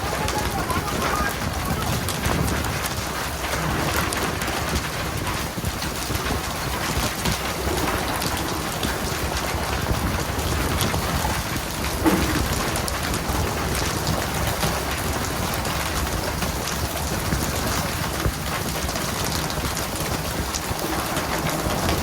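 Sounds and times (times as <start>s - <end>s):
water pattering on a surface: 0.0s - 22.0s
knock: 12.0s - 12.7s.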